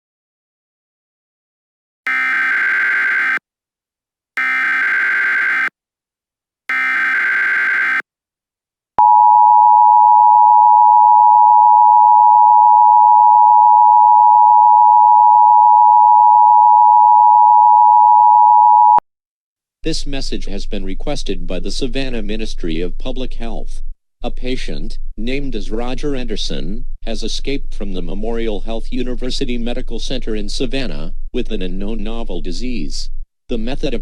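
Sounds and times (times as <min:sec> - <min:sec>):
screechy data tones: 0:02.1 - 0:03.4, 0:04.4 - 0:05.7, 0:06.7 - 0:08.0
two-tone attention signal: 0:02.1 - 0:03.4, 0:04.4 - 0:05.7, 0:06.7 - 0:08.0.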